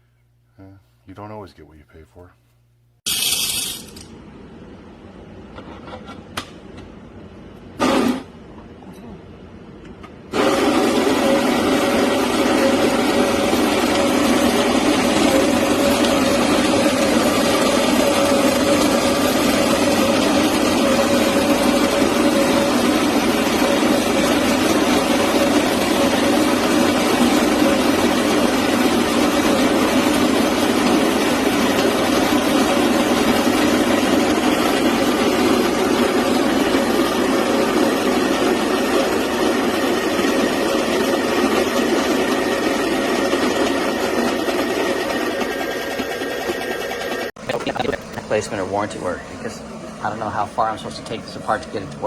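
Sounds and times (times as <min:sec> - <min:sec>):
coffee grinder motor whirring: 0:03.1 - 0:04.1, 0:10.4 - 0:48.2.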